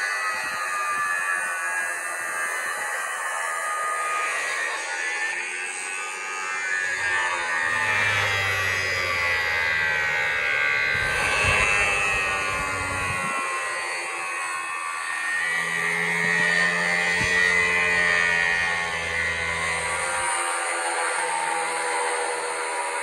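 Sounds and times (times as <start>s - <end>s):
power tool whining on steel: 0.0s - 23.0s
low hum: 6.9s - 20.6s.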